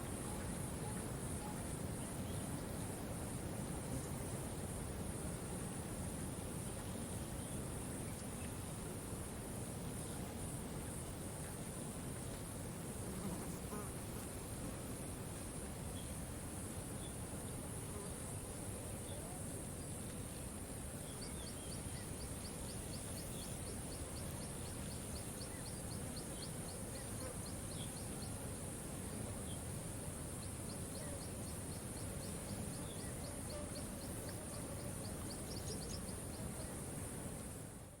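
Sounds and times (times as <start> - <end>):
high insect hum: 0.0 - 38.0
faint chirps: 18.0 - 29.7, 30.3 - 37.6.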